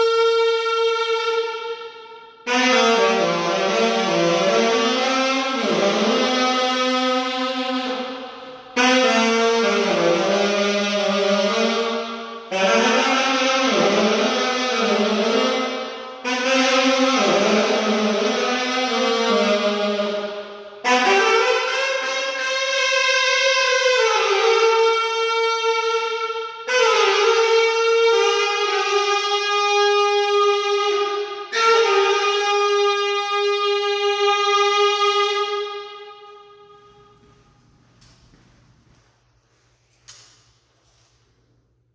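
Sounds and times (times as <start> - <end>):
alto saxophone long held notes: 0.0 - 38.4.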